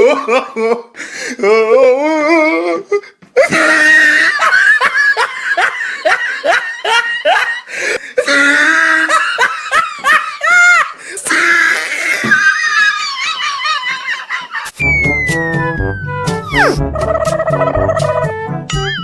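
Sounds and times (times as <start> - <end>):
hearty laughter: 3.4 - 7.8, 8.8 - 11.0, 12.0 - 14.7, 16.7 - 18.3.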